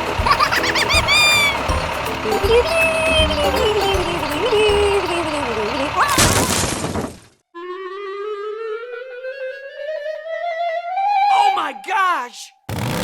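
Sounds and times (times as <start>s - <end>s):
cartoon music: 0.0s - 6.3s
crash: 6.1s - 7.4s.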